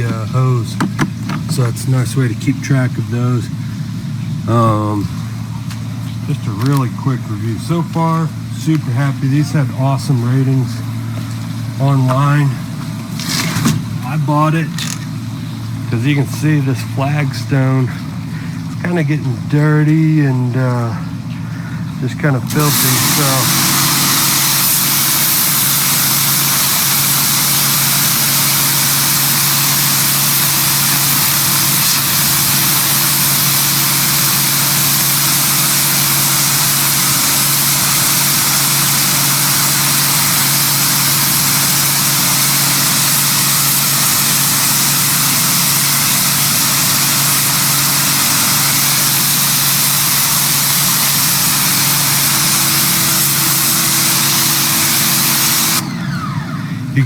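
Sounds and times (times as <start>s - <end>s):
high-pressure water jet hissing: 0.0s - 57.0s
pressure washer motor hum: 0.0s - 57.0s.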